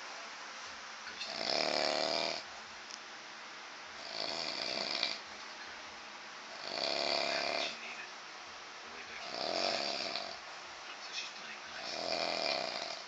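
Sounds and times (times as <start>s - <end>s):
man snoring: 1.2s - 2.5s, 4.0s - 5.3s, 6.5s - 7.8s, 9.2s - 10.4s, 11.8s - 13.0s.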